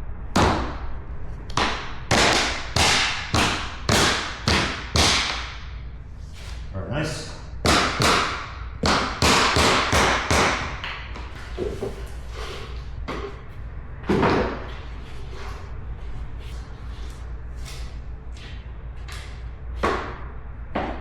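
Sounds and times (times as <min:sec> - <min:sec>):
mallet knocking floor planks: 0:01.6 - 0:05.5, 0:07.7 - 0:11.9.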